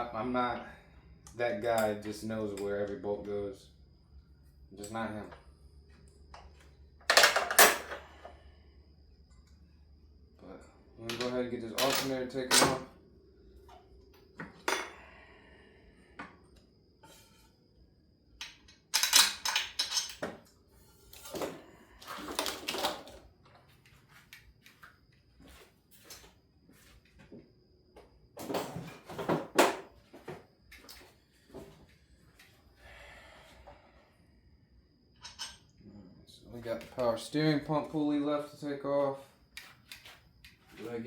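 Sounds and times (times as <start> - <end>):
metal wrenches clinking and clanking: 7.1 - 8.0, 11.1 - 12.9, 18.4 - 20.3, 35.2 - 35.6.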